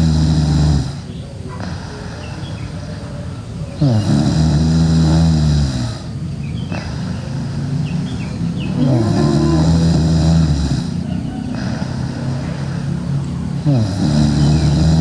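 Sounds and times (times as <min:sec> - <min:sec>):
girl snoring loudly: 0:00.0 - 0:01.9, 0:03.8 - 0:15.0
quiet breathing: 0:00.0 - 0:15.0.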